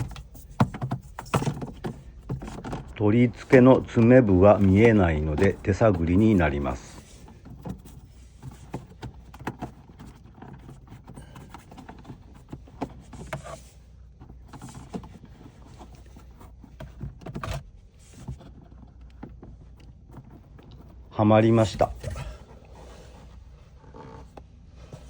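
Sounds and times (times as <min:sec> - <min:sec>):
plastic clicks and knocks: 0:00.0 - 0:13.5.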